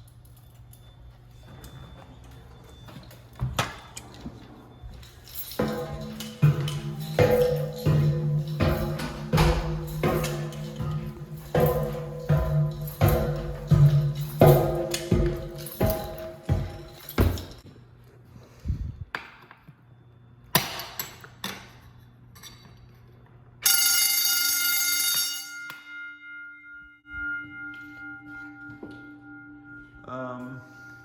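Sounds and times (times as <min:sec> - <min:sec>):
loud metallic ringing: 0:04.7 - 0:17.6, 0:23.7 - 0:31.0
knocks: 0:05.6 - 0:17.6.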